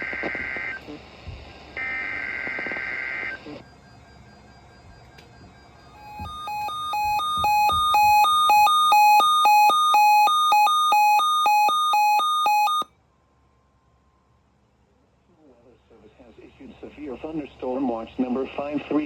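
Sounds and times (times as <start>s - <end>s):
two-tone electronic alarm beeping: 3.3s - 12.9s.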